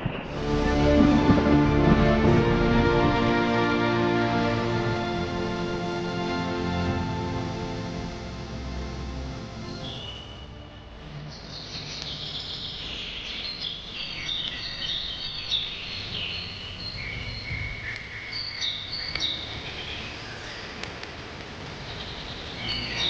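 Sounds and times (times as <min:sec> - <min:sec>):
small birds chirping and trilling: 0:11.2 - 0:23.0.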